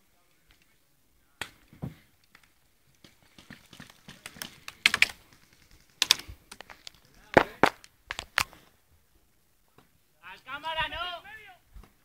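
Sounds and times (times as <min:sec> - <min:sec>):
airsoft guns firing: 0:07.3 - 0:08.4.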